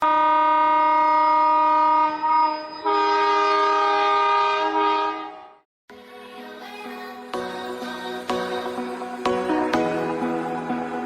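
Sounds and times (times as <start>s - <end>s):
train horn blasts: 0.0s - 5.6s.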